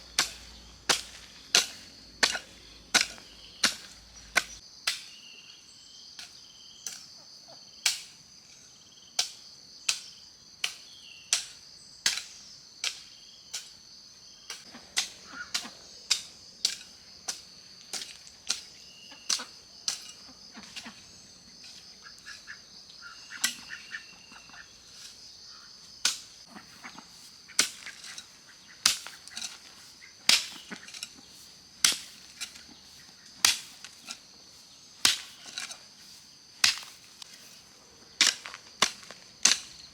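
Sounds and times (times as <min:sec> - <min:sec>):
insects droning: 0:00.0 - 0:39.9
sharp chopping strikes: 0:00.1 - 0:05.1, 0:33.4 - 0:34.2, 0:35.0 - 0:35.7, 0:36.6 - 0:37.2.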